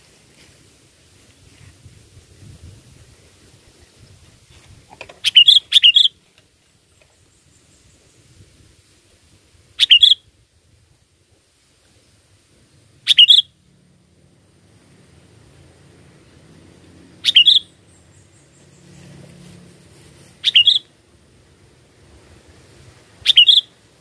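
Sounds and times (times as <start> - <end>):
bird whistled calls: 5.2 - 6.2, 9.8 - 10.2, 13.1 - 13.5, 17.2 - 17.8, 20.4 - 20.9, 23.2 - 23.8.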